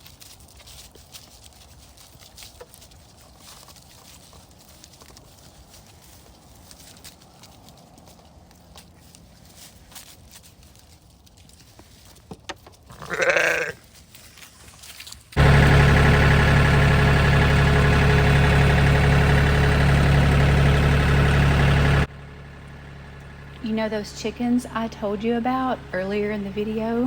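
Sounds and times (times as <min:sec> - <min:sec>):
sheep bleating: 0:12.9 - 0:13.8
loud engine humming: 0:15.4 - 0:27.0.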